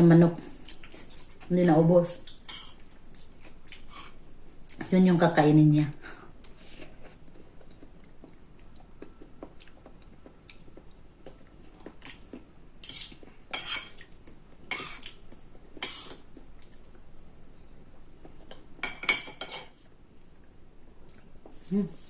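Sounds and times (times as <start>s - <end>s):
cutlery clinking on a plate: 12.9s - 14.0s, 18.8s - 19.8s.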